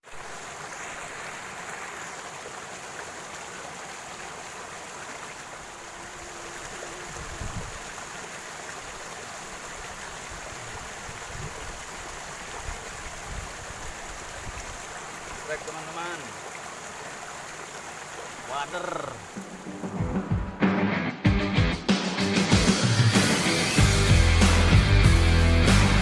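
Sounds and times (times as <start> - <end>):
stream flowing: 0.0 - 20.6.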